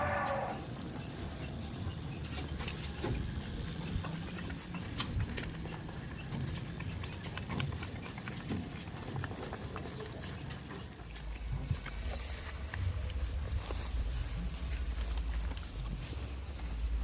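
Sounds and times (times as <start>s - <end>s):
goat hooves clicking: 0.2s - 17.0s.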